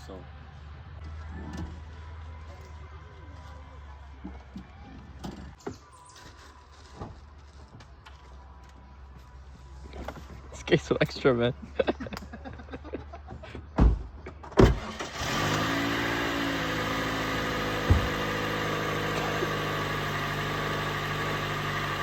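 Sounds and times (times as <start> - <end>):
car engine starting and idling: 14.4 - 22.0
thumps: 17.8 - 18.4.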